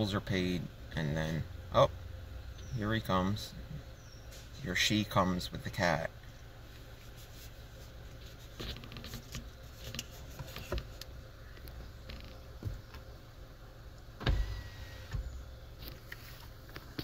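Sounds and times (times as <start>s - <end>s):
low steady rumble: 0.0s - 17.0s
thump: 14.2s - 15.3s.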